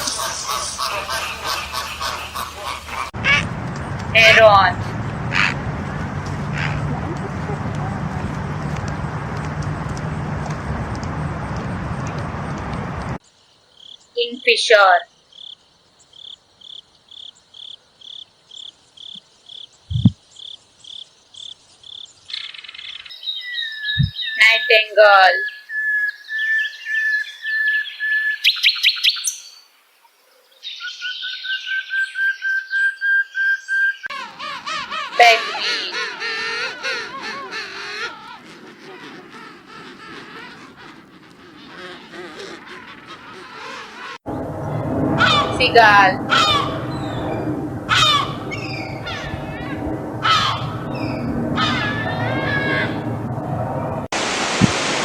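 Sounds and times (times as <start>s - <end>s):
kingfisher calling: 0.0s - 9.3s, 24.0s - 25.2s, 34.1s - 44.2s, 45.2s - 53.0s
loud low thump: 19.9s - 20.2s.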